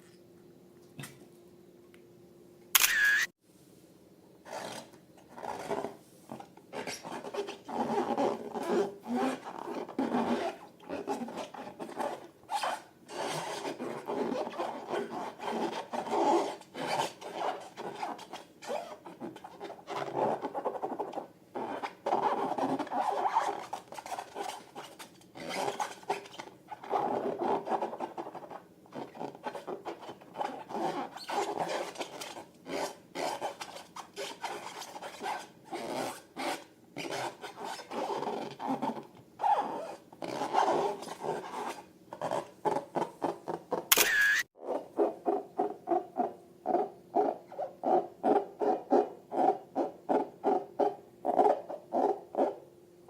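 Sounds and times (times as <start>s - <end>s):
sharp clicks: 2.8s - 3.3s, 43.9s - 44.4s.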